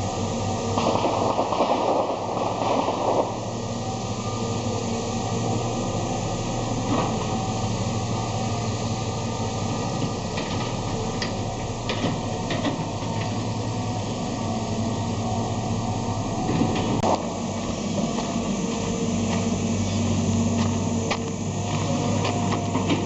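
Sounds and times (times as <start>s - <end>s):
engine droning: 0.0s - 23.0s.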